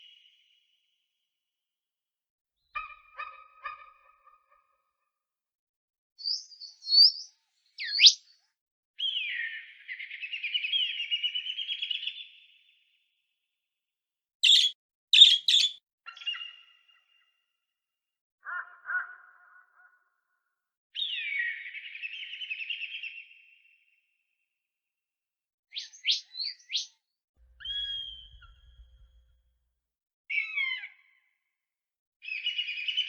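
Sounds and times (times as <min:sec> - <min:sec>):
bird calls: 0:06.2 - 0:08.3, 0:14.4 - 0:17.2, 0:27.5 - 0:29.3
bird twittering trill: 0:06.2 - 0:08.3, 0:14.4 - 0:16.7, 0:25.8 - 0:26.9, 0:27.5 - 0:29.3.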